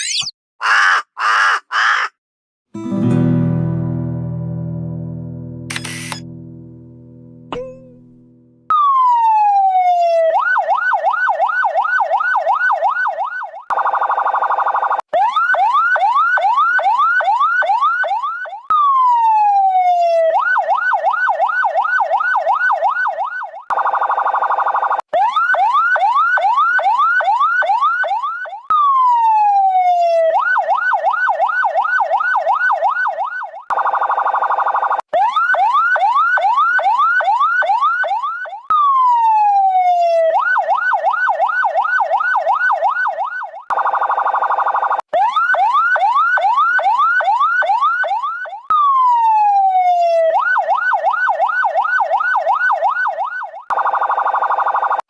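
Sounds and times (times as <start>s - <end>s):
ambulance siren wail and yelp: 35.2s - 43.6s, 45.2s - 53.6s.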